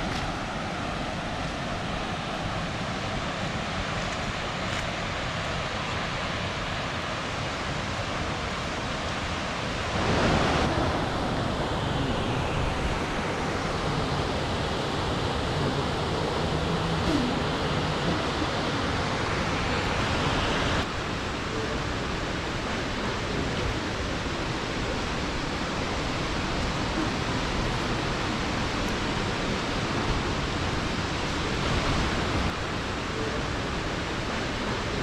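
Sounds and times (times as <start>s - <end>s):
waterfall rushing: 0.0s - 35.0s.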